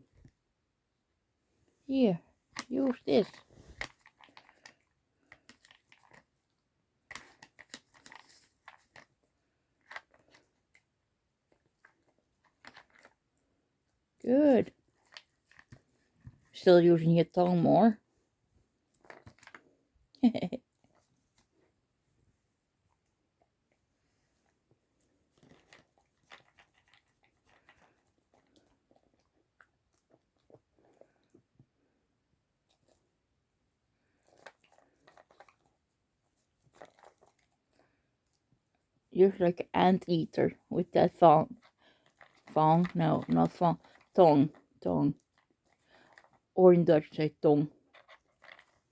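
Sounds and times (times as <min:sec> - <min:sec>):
dog licking and crunching treats: 0:02.6 - 0:06.3, 0:07.1 - 0:09.2, 0:11.5 - 0:13.2, 0:25.4 - 0:31.2, 0:34.2 - 0:35.8, 0:36.6 - 0:37.8, 0:47.7 - 0:48.9.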